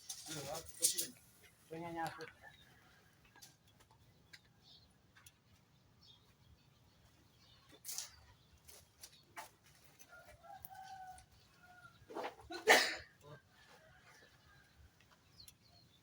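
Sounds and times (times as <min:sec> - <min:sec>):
rooster crowing: 0:10.1 - 0:12.0.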